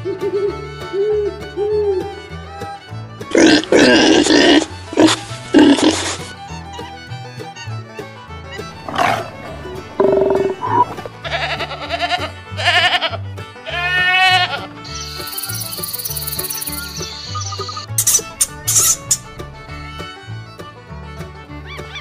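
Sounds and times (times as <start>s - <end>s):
farm animal bleating: 8.8s - 15.6s.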